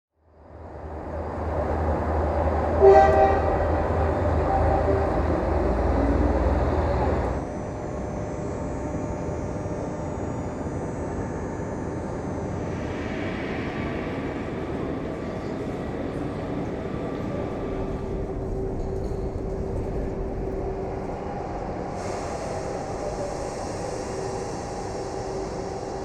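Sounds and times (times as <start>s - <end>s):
station background noise: 0.3s - 26.0s
train rumbling: 0.3s - 26.0s
train horn blast: 2.2s - 7.5s.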